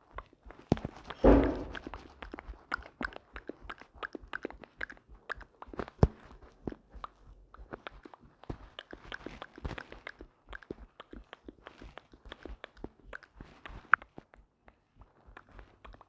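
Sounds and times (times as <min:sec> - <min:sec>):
louder knock: 0:01.2 - 0:01.9.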